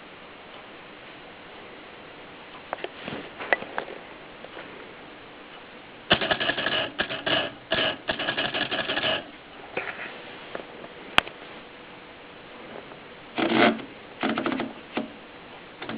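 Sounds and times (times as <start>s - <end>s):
typewriter clicking and ratcheting: 6.1s - 9.3s, 13.4s - 14.7s.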